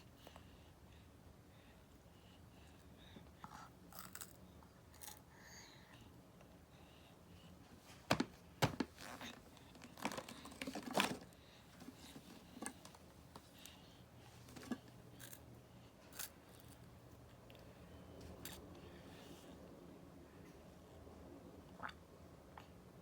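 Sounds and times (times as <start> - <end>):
chips crunching: 3.9 - 4.4, 16.1 - 16.7
chip bag crinkling: 8.7 - 11.3.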